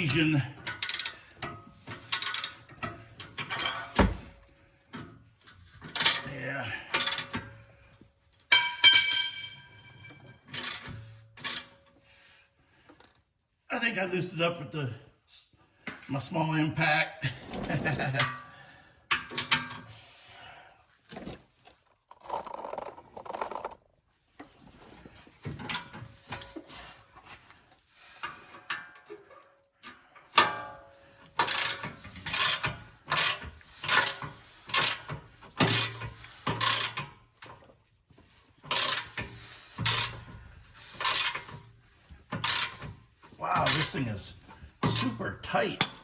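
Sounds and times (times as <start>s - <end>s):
metal clanks: 0.6s - 4.4s, 5.7s - 6.3s, 7.0s - 7.6s, 8.5s - 11.7s, 28.2s - 37.2s, 38.6s - 41.7s, 42.3s - 43.0s, 43.6s - 44.1s
ratchet wrench clicking: 0.8s - 1.2s, 2.0s - 2.6s, 31.4s - 37.0s, 38.7s - 40.2s, 40.8s - 41.6s, 42.4s - 42.9s.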